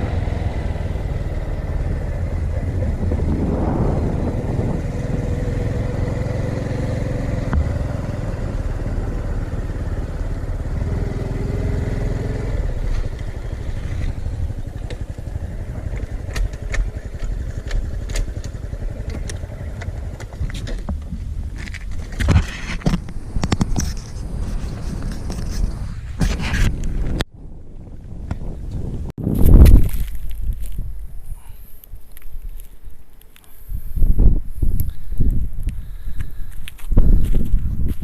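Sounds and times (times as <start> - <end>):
motorcycle engine running: 0.0 - 21.5
sharp clicks and ticks: 15.8 - 20.7.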